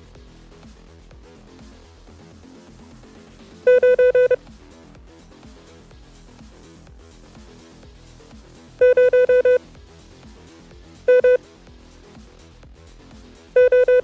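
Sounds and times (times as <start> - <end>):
quiet background music: 3.4 - 4.7, 8.2 - 9.7, 11.0 - 12.0, 13.5 - 14.0
morse code beeps: 3.7 - 4.4, 8.8 - 9.6, 11.1 - 11.4, 13.6 - 14.0.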